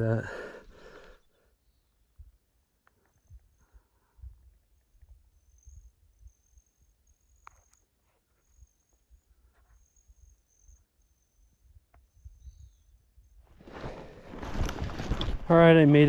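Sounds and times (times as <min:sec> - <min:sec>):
faint high-pitched insect trill: 0:01.6 - 0:13.4.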